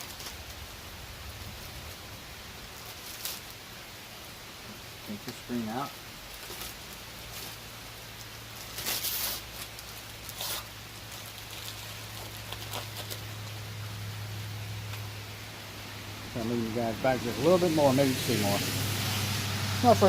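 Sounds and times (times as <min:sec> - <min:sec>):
screen mesh rustling and scraping: 0:02.7 - 0:03.8, 0:05.2 - 0:13.8.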